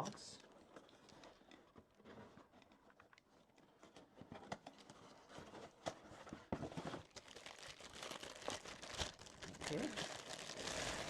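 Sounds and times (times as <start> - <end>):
knocks and clicks of packaging: 3.8 - 7.8.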